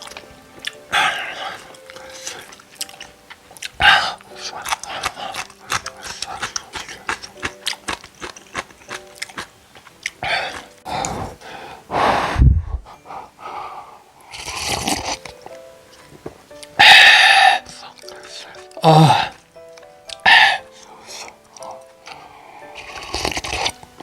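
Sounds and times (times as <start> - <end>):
wet chewing clicks: 0.0 - 11.2, 14.2 - 17.0, 17.6 - 24.0
noodle slurping: 14.2 - 15.3, 20.1 - 23.8.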